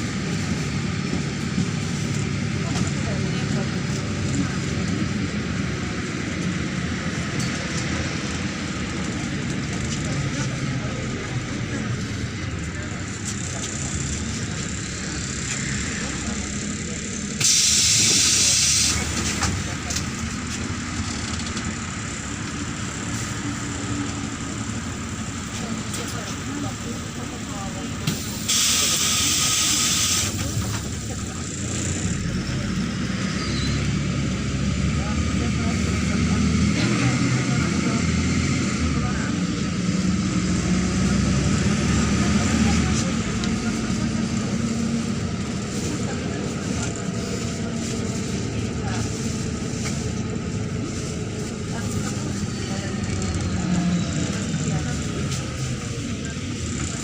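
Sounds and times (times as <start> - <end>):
bus engine drone: 0.0 - 57.0
road and body noise: 0.0 - 57.0
compressed air hissing: 17.4 - 19.0, 28.1 - 30.4.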